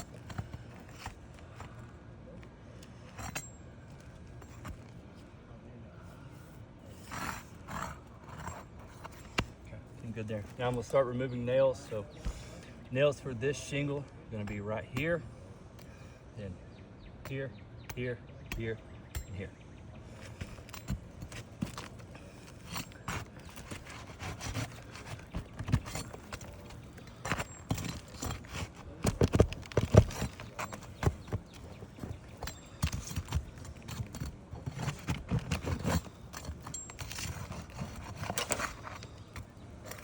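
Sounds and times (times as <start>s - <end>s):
metal tool pulling roofing nails: 20.2s - 40.0s.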